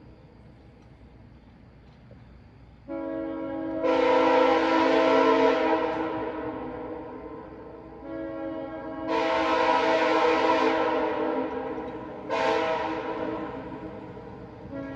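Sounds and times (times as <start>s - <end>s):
air horn chord: 2.9s - 6.6s, 8.0s - 11.7s, 12.3s - 13.7s.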